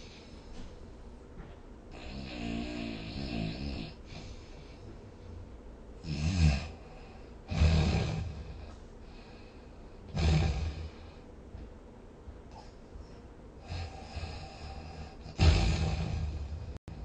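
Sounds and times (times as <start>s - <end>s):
quiet breathing: 0.0s - 5.8s, 6.6s - 11.7s, 12.4s - 17.0s
person snoring: 1.9s - 4.8s, 6.0s - 9.5s, 10.1s - 11.2s, 13.6s - 17.0s.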